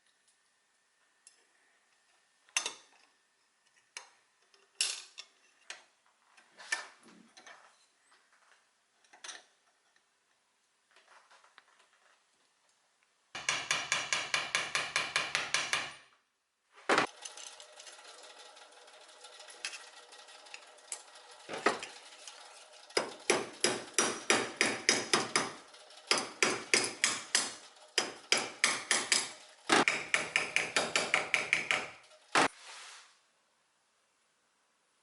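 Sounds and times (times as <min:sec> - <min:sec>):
hammer tapping: 0:13.4 - 0:16.0, 0:23.0 - 0:32.0.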